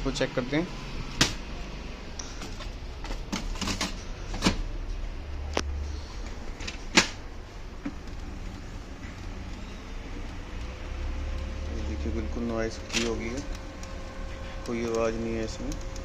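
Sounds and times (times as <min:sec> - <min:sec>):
printer motor hum: 0:00.0 - 0:16.0
sharp mechanical clicks: 0:08.0 - 0:16.0.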